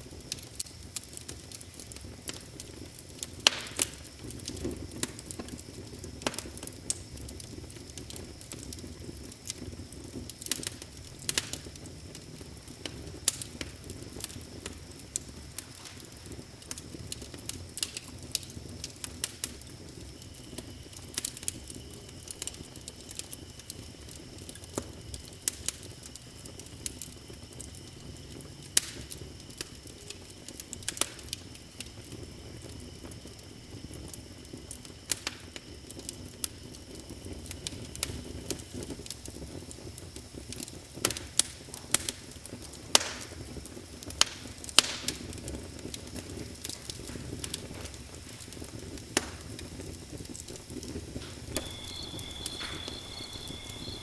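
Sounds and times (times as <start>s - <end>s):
wood fire crackling: 0.0s - 54.0s
faint high-pitched tone: 51.5s - 54.0s.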